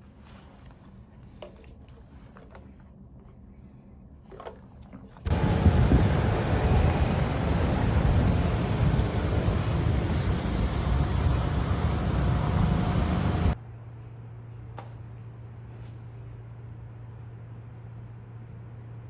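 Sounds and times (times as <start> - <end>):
traffic noise: 5.3 - 13.6.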